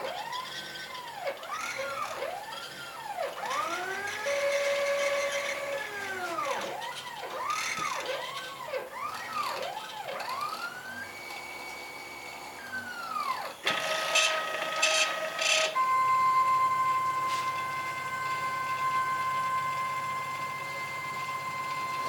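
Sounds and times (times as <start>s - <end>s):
stepper motors whining: 0.0s - 22.0s
harsh motor bursts: 13.6s - 16.2s.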